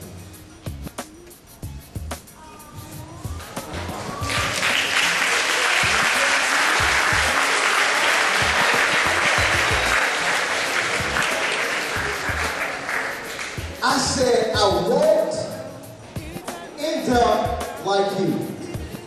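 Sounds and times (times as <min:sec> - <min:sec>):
background music: 0:00.0 - 0:19.0
audience applauding: 0:03.6 - 0:13.8.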